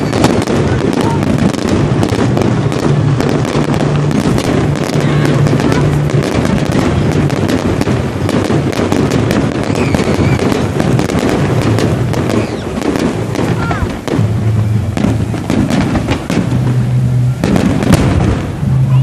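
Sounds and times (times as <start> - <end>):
fireworks crackling and banging: 0.0 - 19.0
steady low tone: 13.9 - 19.0.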